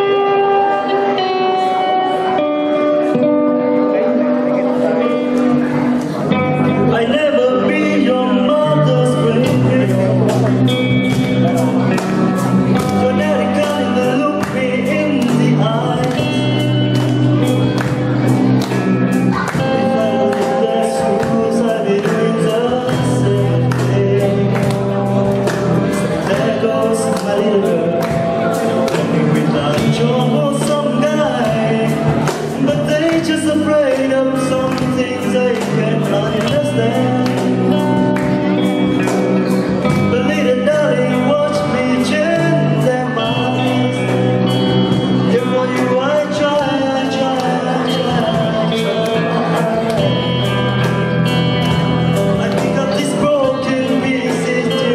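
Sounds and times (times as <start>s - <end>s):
song with singing and band: 0.0s - 54.9s.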